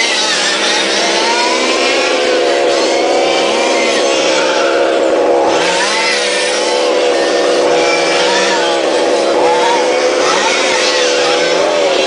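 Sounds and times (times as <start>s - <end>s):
model race car engines buzzing: 0.0s - 12.0s.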